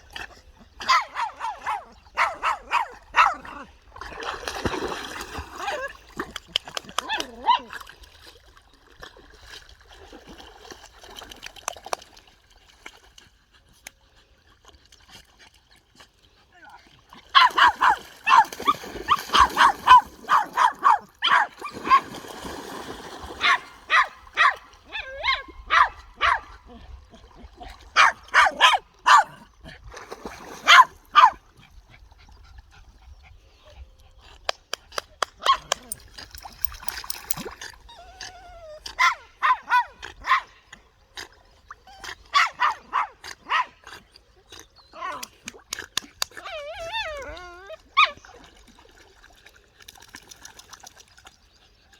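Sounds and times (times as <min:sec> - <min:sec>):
water splashing and trickling: 0:00.0 - 0:51.9
dog barking in sharp yips: 0:17.4 - 0:22.0, 0:23.4 - 0:26.5, 0:28.0 - 0:29.3, 0:30.6 - 0:31.4, 0:35.4 - 0:36.0
dog whines and yips: 0:24.4 - 0:26.4, 0:37.3 - 0:40.4, 0:46.4 - 0:48.3.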